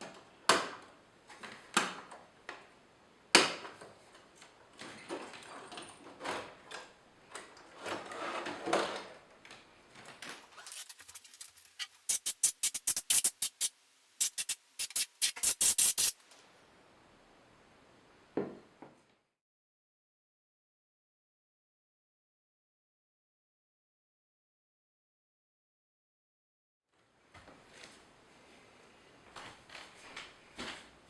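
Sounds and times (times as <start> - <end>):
short bursts of hiss: 10.6 - 16.3.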